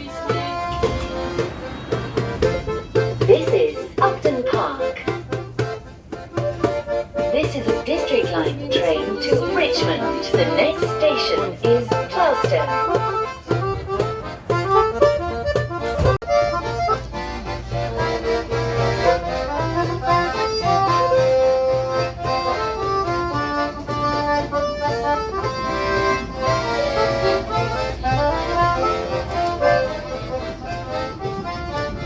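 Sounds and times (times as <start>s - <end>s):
underground train rumbling: 0.0s - 16.1s
accordion playing a tune: 0.0s - 32.0s.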